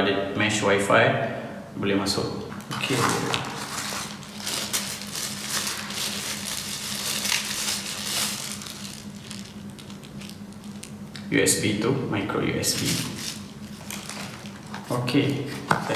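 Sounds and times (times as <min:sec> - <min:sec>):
plastic packaging crinkling: 0:02.6 - 0:11.2, 0:12.7 - 0:15.9.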